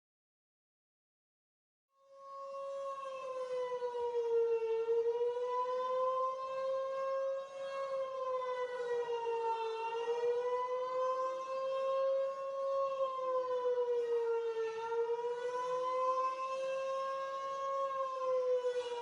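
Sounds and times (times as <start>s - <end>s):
air-raid siren wailing: 2.0s - 19.0s.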